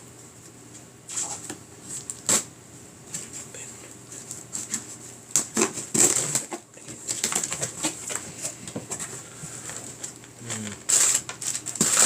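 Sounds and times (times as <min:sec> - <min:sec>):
packaging rustling and crinkling: 0:04.2 - 0:12.0.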